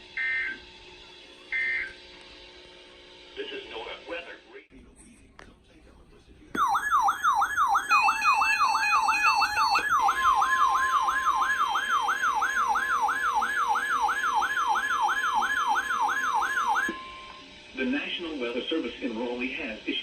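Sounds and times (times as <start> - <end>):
steady warning alarm tone: 0.1 - 0.6, 1.5 - 2.1, 6.6 - 18.5
electronic whoop siren: 1.5 - 2.0, 6.6 - 17.4.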